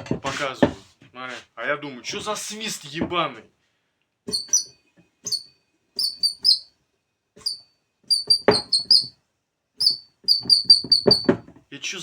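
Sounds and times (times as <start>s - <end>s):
shock absorber strut squealing: 4.3s - 6.7s, 7.4s - 9.1s, 9.8s - 11.3s.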